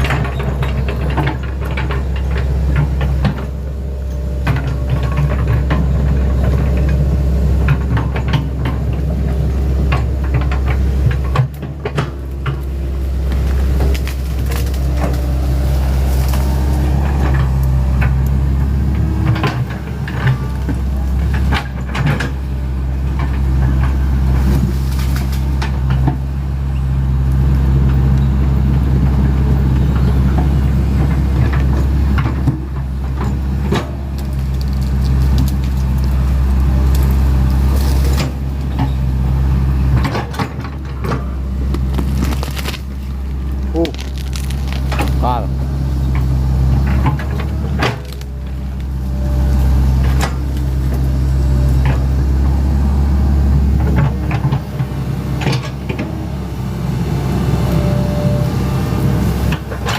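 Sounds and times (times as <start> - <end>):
excavator diesel engine running: 0.0 - 59.9
sharp knocks and cracks: 13.3 - 18.3, 31.4 - 38.9, 40.0 - 45.4, 46.2 - 48.9.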